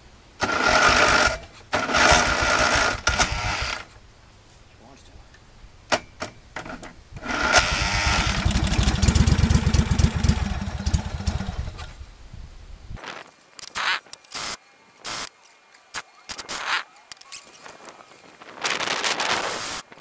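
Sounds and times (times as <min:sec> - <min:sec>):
tractor engine cranking on starter: 0:00.4 - 0:03.9, 0:06.7 - 0:11.9.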